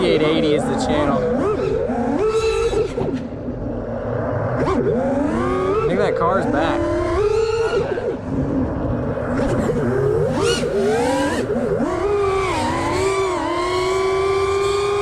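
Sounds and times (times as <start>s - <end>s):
drone motors whining: 6.6s - 15.0s.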